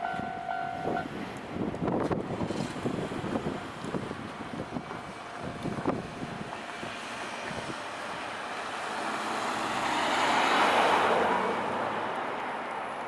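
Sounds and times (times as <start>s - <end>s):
vehicle passing by: 7.0s - 11.9s.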